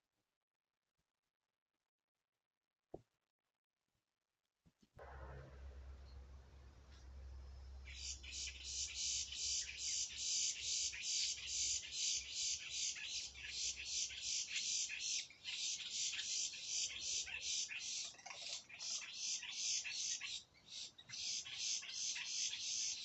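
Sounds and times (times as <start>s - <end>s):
high rapid animal chirping: 7.9s - 23.0s.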